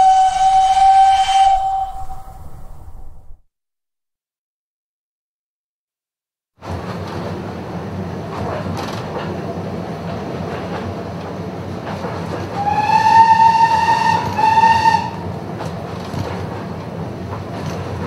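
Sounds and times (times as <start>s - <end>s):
steam whistle blasts: 0.0s - 2.9s, 12.6s - 15.3s
steam train rumble and wheel clatter: 0.0s - 3.3s, 6.6s - 18.0s.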